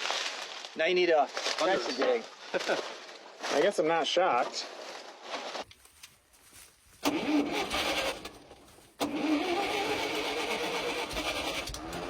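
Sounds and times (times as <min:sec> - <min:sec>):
small gasoline engine starting: 0:07.0 - 0:12.0.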